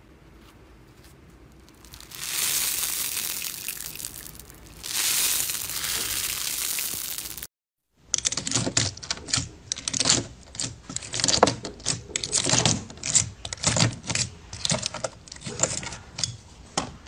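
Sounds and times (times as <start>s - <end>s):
slime crackling and crunching: 1.6s - 7.5s.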